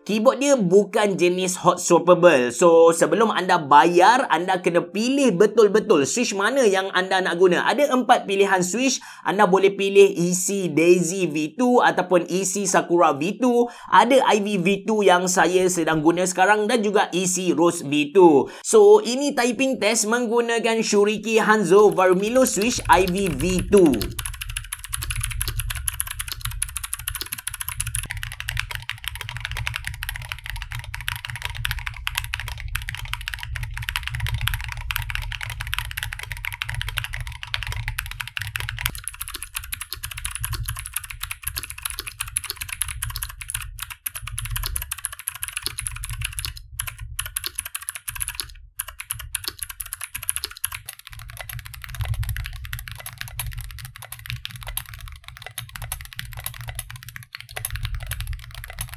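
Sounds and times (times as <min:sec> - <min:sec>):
fast typing on mechanical keyboard: 0:21.3 - 0:58.9.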